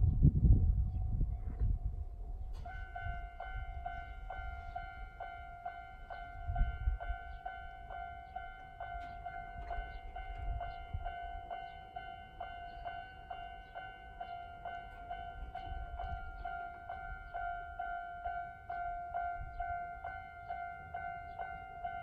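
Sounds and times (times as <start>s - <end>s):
low rumble: 0.0s - 2.7s.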